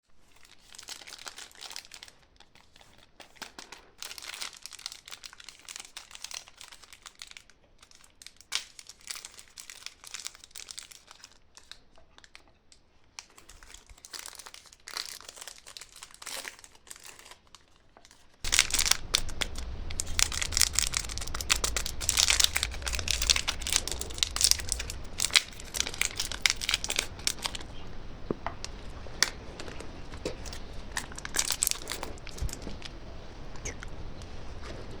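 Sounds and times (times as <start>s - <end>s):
candy wrappers crinkling: 18.5s - 35.0s
low rumble: 18.5s - 35.0s.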